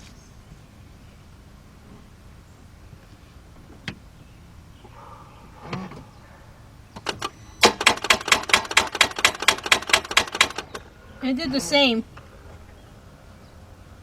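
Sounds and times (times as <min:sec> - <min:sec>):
rapid clicking of car starter: 0:06.9 - 0:10.9.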